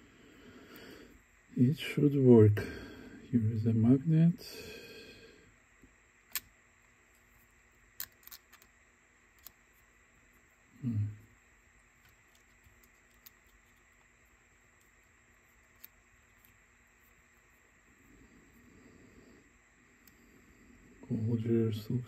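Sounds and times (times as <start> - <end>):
small parts clicking: 6.3 - 6.5, 8.0 - 8.7, 9.3 - 9.6, 12.0 - 14.1, 14.8 - 17.2.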